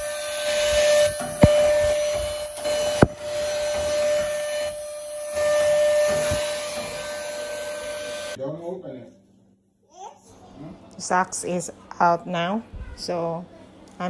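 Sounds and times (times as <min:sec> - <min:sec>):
vacuum cleaner whining: 0:00.0 - 0:08.4.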